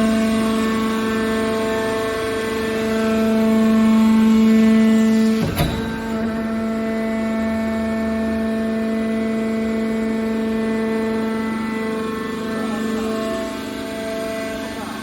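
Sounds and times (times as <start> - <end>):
hydraulic pump whine: 0.0 - 15.0
sharp metal clank: 5.4 - 7.1.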